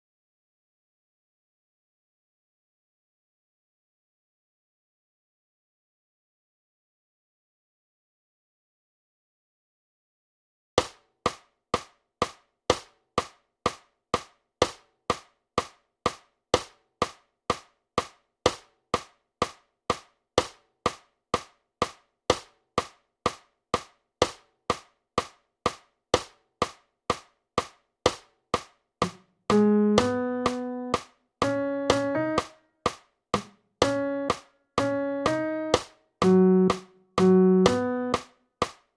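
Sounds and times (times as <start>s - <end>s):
metronome clicking: 29.0s - 32.5s, 33.4s - 38.3s
sustained melody notes: 29.5s - 32.4s, 33.4s - 38.2s.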